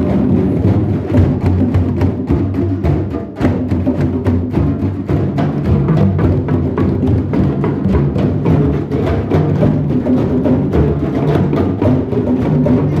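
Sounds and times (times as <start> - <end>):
hand drums playing: 0.0 - 13.0.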